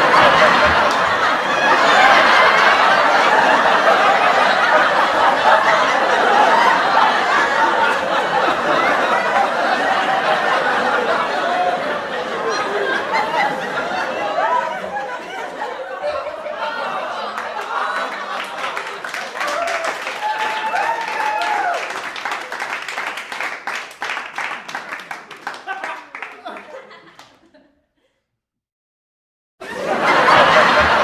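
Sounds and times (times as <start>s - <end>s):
studio audience laughing: 0.0s - 27.8s, 29.6s - 31.0s.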